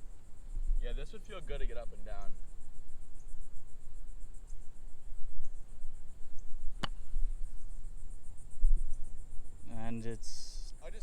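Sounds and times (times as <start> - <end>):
insects chirring: 0.0 - 11.0
golf club strike: 6.8 - 7.1.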